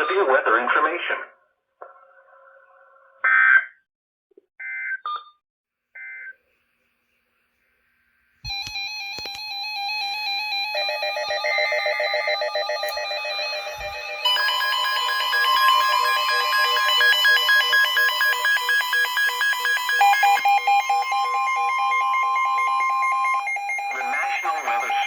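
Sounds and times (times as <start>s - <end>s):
warbling electronic alert alarm: 8.5s - 25.0s
screeching data bursts: 12.9s - 25.0s.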